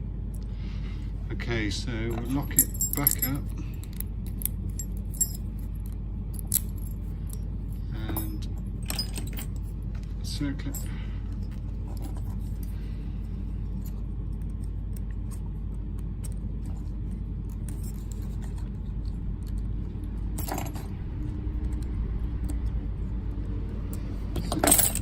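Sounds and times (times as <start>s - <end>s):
steady low hum: 0.0s - 25.0s
metal lock parts clicking and rattling: 2.0s - 12.8s, 16.2s - 21.0s, 24.4s - 25.0s.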